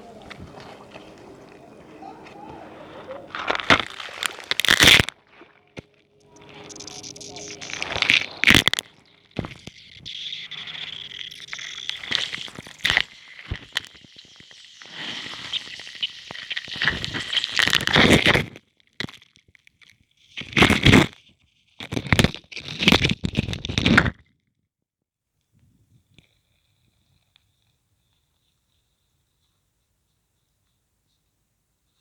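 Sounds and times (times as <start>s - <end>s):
crunchy balls crackling in water: 0.0s - 19.2s.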